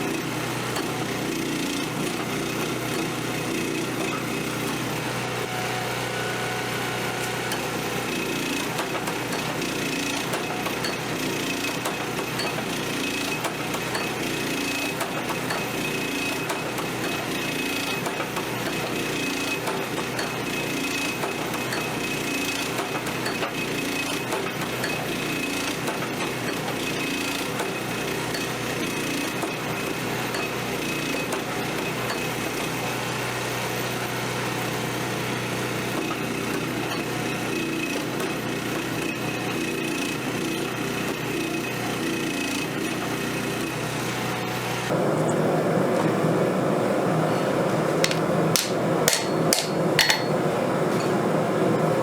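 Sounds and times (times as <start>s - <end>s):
forging machinery noise: 0.0s - 52.0s
hammer strikes on hot steel: 7.2s - 32.6s, 48.0s - 51.2s.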